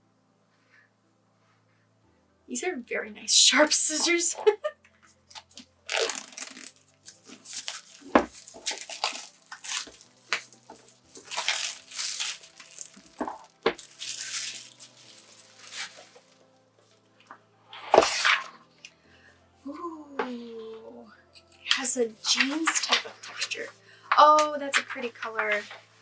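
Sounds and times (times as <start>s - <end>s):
faint background music: 0.0s - 26.0s
plastic wrap crinkling and tearing: 5.0s - 16.6s, 22.3s - 25.9s
scissors cutting plastic wrap: 5.1s - 16.5s, 21.7s - 23.6s
book knocking on table: 8.1s - 8.4s.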